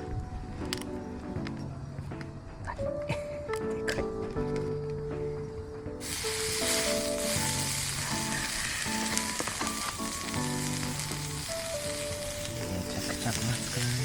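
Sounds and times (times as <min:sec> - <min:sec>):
background music: 0:00.0 - 0:14.0
food sizzling in a pan: 0:06.0 - 0:14.0.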